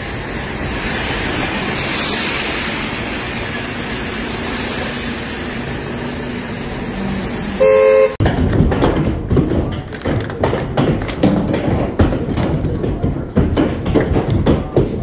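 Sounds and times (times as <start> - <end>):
heavy rain pouring: 0.0 - 8.2.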